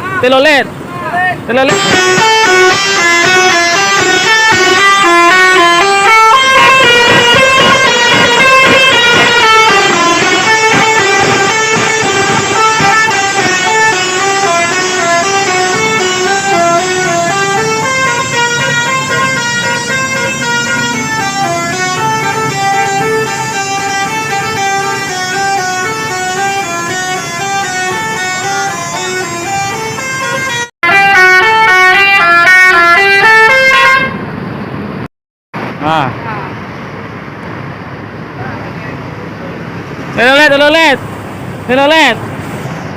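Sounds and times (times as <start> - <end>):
multi-tone air horn melody: 1.6 - 34.2.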